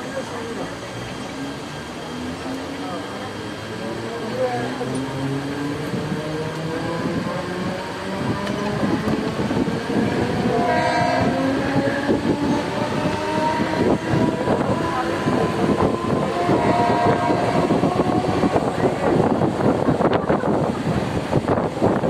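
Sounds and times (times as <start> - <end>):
electric train motor whine: 0.0 - 22.0
wheels and carriages rattling: 0.0 - 22.0
short horn-like tone: 10.4 - 11.6, 16.5 - 17.9.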